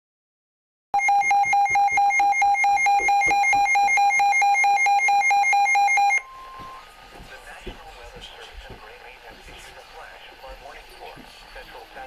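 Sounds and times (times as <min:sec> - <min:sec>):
two-pitch warbling alert alarm: 0:01.0 - 0:06.9.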